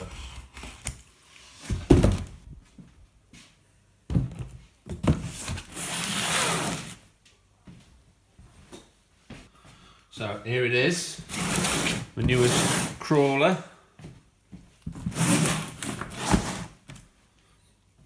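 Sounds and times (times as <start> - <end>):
cardboard box thumps: 1.7 - 2.4.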